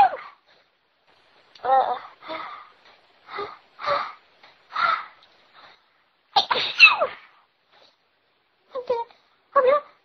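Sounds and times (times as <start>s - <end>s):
person sneezing: 6.4s - 7.3s.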